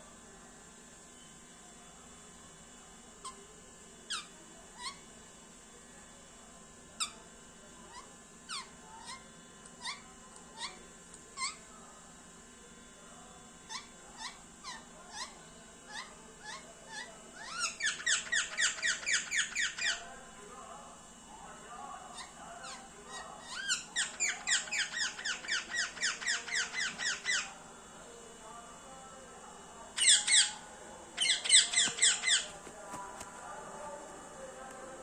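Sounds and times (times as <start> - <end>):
parrot chirping: 4.1 - 5.0, 11.4 - 11.6, 13.7 - 20.0, 22.1 - 27.6, 30.0 - 30.6, 31.2 - 32.6.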